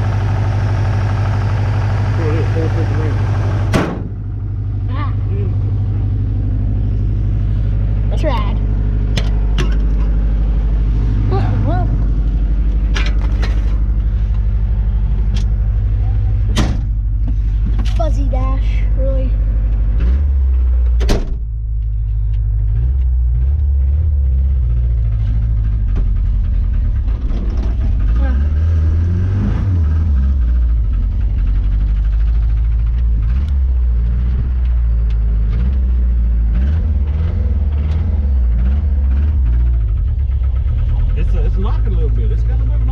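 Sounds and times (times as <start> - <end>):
engine running with pulse: 0.0 - 42.9
sharp clunks: 3.7 - 4.2, 16.5 - 18.0, 20.9 - 21.5.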